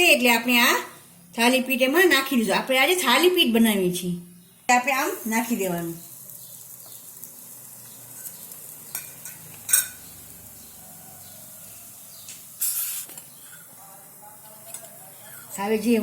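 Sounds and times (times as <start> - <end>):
dough sizzling on a hot pan: 4.7 - 16.0.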